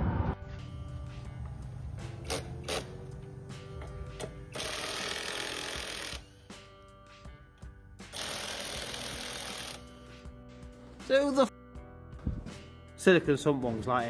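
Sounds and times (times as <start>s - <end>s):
background music: 0.0s - 14.0s
mechanical ratcheting: 2.2s - 3.0s, 4.2s - 6.3s, 8.1s - 9.9s.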